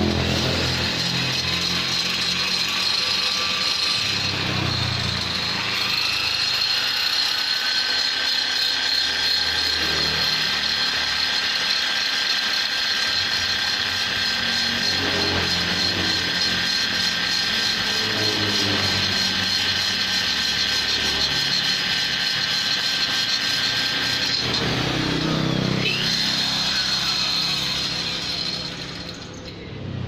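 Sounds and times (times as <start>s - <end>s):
rotary grinder cutting metal: 0.0s - 29.7s.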